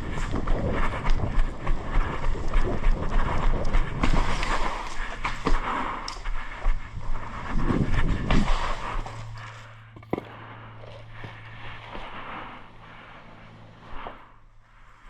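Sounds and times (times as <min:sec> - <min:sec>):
camera handling rumble: 0:10.0 - 0:10.3
quick footsteps: 0:10.0 - 0:10.3.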